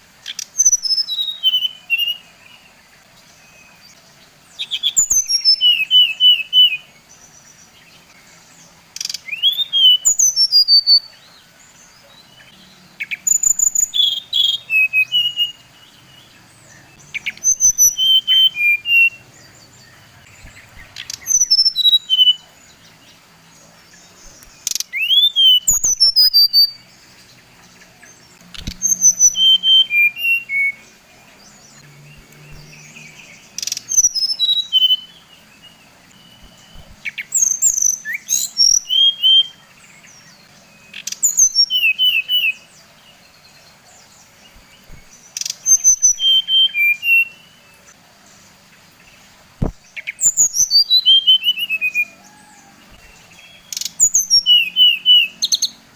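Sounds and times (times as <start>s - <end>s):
bird singing whistled notes: 0.0s - 47.9s, 49.6s - 55.8s
sharp clicks: 28.5s - 28.9s.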